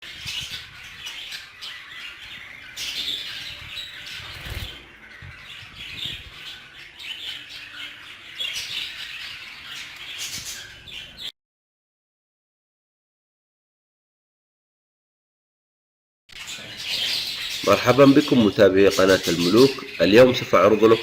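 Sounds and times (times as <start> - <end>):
budgerigars chirping and squawking: 0.0 - 11.3, 16.3 - 21.0.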